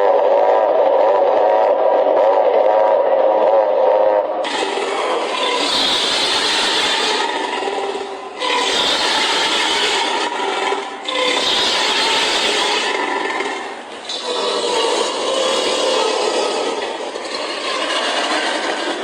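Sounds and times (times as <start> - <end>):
hoarse hissing dinosaur call: 4.4 - 19.0.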